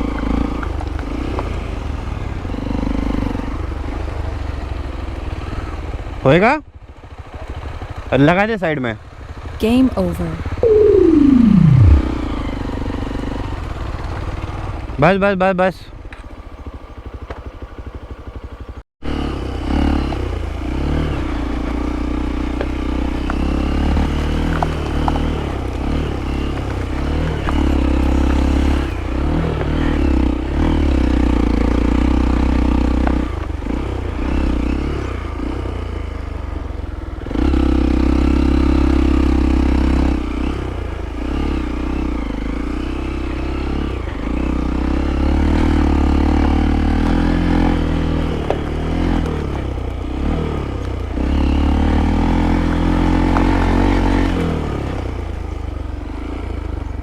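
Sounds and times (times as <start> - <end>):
motorcycle engine revving: 18.4 - 56.9
motorcycle knocks and rattles: 46.4 - 50.0.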